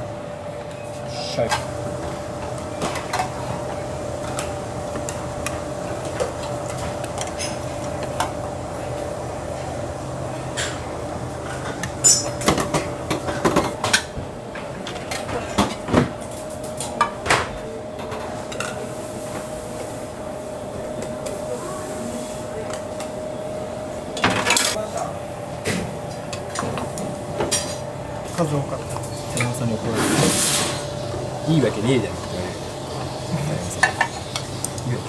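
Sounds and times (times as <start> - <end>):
dishes and utensils clinking: 2.8 - 8.4, 11.5 - 14.1, 33.2 - 34.9.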